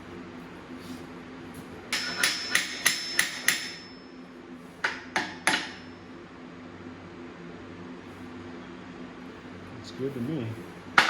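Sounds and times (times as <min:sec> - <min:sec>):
hammer striking metal: 0:01.9 - 0:04.1, 0:04.9 - 0:05.9.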